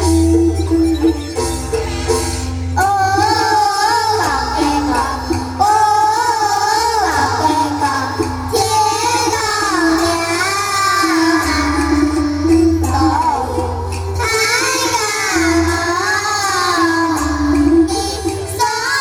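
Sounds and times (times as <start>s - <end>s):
instrumental accompaniment: 0.0s - 14.5s
children singing in unison: 1.8s - 19.0s.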